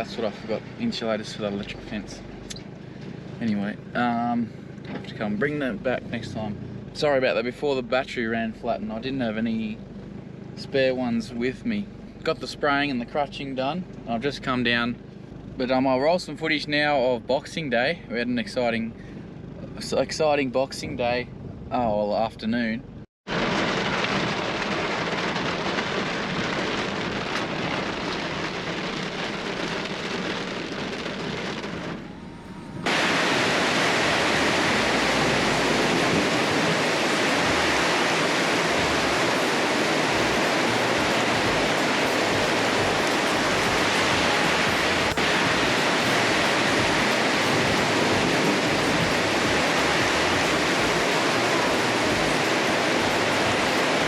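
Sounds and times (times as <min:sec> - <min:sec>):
heavy rain pouring: 0:00.0 - 0:02.0, 0:23.3 - 0:54.0.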